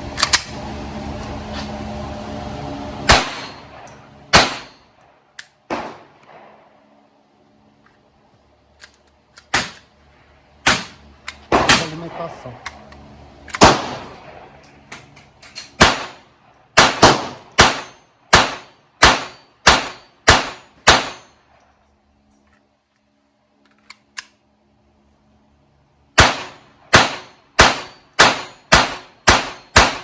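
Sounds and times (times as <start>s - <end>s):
pistol shots: 3.1s - 3.7s, 4.3s - 4.8s, 5.7s - 6.6s, 10.6s - 12.0s, 13.6s - 14.5s, 15.8s - 21.3s, 26.2s - 30.0s.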